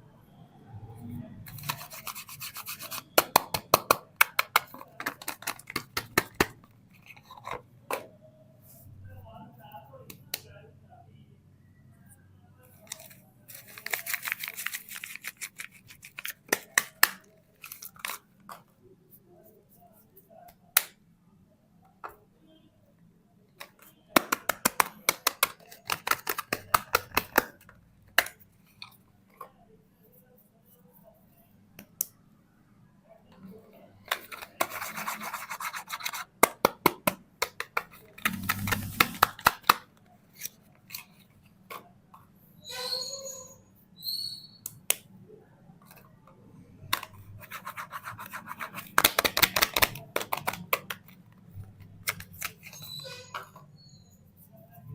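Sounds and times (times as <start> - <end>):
packaging crinkling: 12.9 - 16.8.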